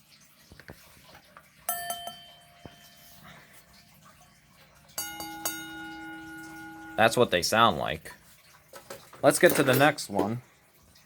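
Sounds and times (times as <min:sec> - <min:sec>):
alarm bell gong struck: 0:01.7 - 0:03.2, 0:05.0 - 0:07.3.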